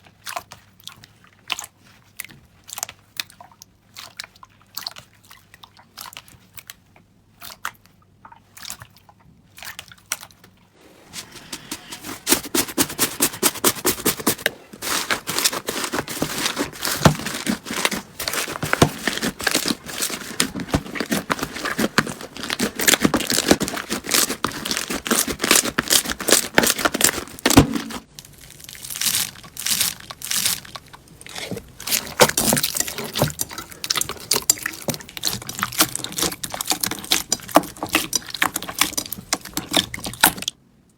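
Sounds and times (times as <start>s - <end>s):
slime crackling and popping: 13.8s - 40.6s.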